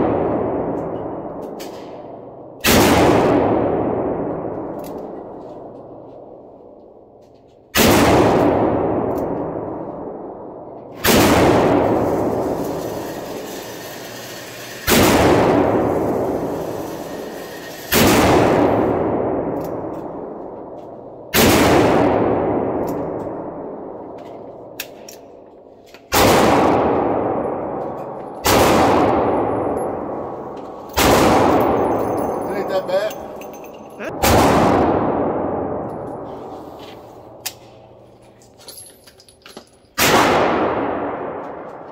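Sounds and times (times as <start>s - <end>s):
revolver gunshots echoing: 0.0s - 5.3s, 7.7s - 25.4s, 26.1s - 33.4s, 34.1s - 36.2s, 40.0s - 41.7s.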